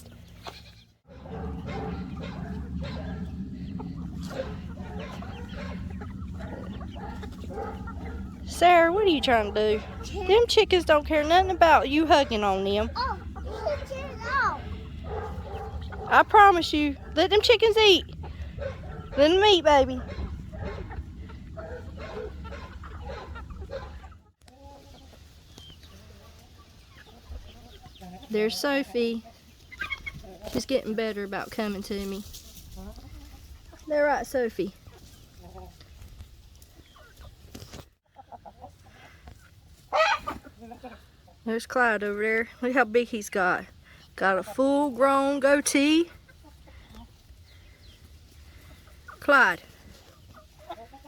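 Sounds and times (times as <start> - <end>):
chickens clucking: 0.0 - 51.0
steady low rumble: 1.0 - 24.3.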